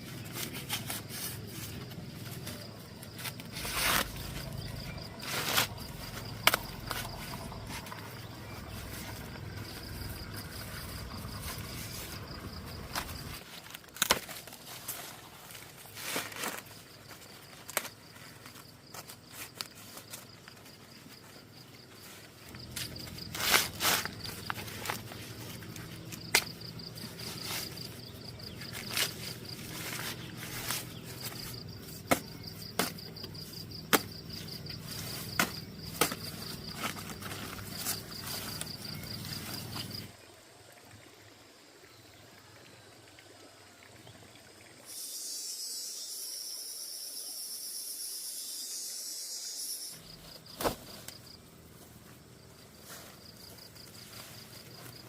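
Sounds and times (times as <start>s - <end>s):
insects trilling: 0.0s - 55.0s
low hum: 2.0s - 13.4s
loud high hissing buzz: 44.9s - 50.2s.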